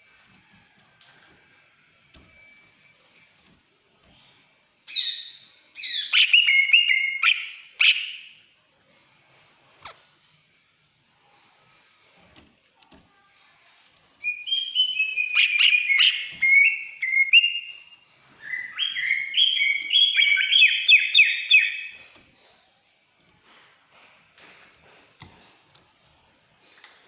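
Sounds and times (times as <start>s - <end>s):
bird singing high whistled notes: 4.9s - 8.3s, 14.2s - 22.0s.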